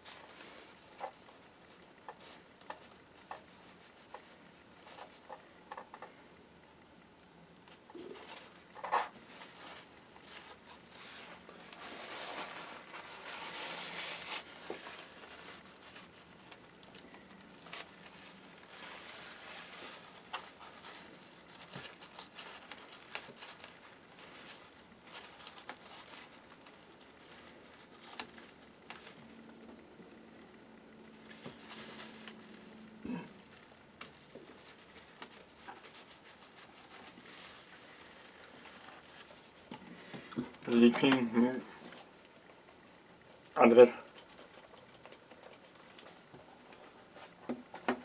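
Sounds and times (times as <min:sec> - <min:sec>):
faint rubbing and scrubbing: 0:07.7 - 0:29.2, 0:31.2 - 0:48.0.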